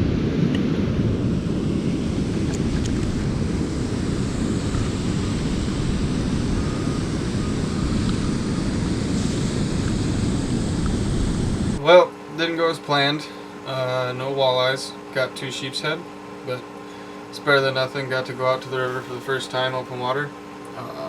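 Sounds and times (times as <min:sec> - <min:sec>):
wind on microphone: 0:00.0 - 0:11.8.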